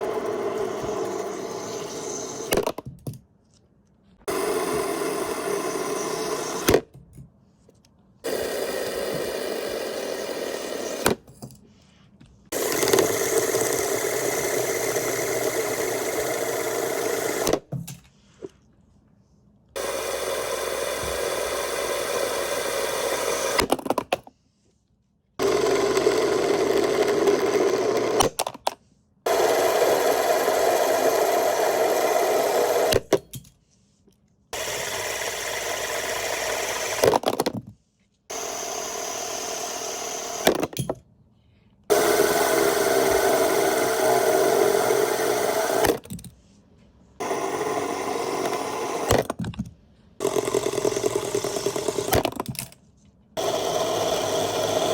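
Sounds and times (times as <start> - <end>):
fidget spinners whirring: 0.0 - 2.7
clicks and knocks of spinners stopping: 41.9 - 46.0, 50.2 - 52.4.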